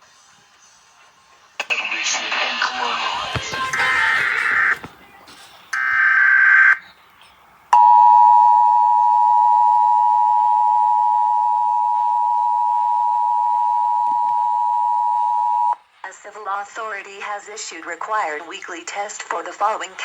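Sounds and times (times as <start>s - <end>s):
two-tone alarm: 7.8s - 15.8s.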